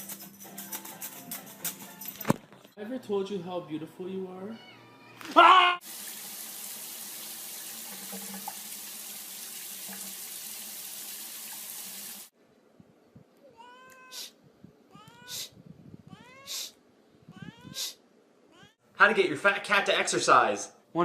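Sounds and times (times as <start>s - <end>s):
cat meowing: 4.5s - 5.8s, 13.4s - 14.3s, 14.9s - 15.5s, 16.1s - 16.6s, 17.3s - 18.8s
water running from a tap: 5.8s - 12.3s
sharp hiss-like bursts: 16.5s - 16.8s.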